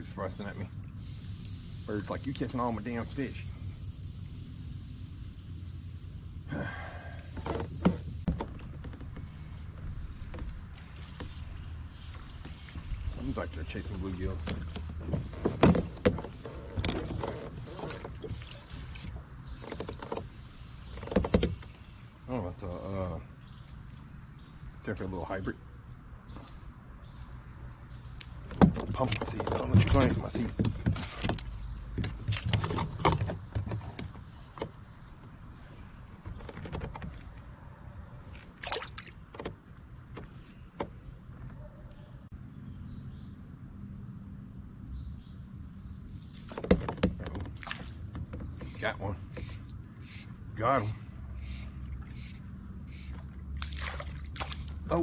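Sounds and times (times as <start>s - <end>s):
water rumble: 0.0s - 41.6s, 45.7s - 55.0s
faint high insect hum: 0.0s - 55.0s
low rumble of wind: 0.0s - 55.0s
knocks and clicks on boat: 7.3s - 22.0s, 28.0s - 35.4s, 36.2s - 37.5s, 38.3s - 42.0s, 46.3s - 49.7s
water splashing: 9.2s - 22.0s, 38.2s - 39.3s, 46.4s - 55.0s.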